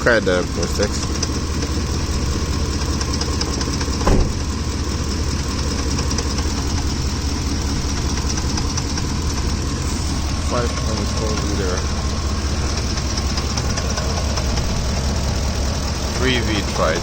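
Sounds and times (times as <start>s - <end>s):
engine idling: 0.0s - 17.0s
ticking clatter from engine: 0.0s - 17.0s
thump: 4.0s - 4.5s.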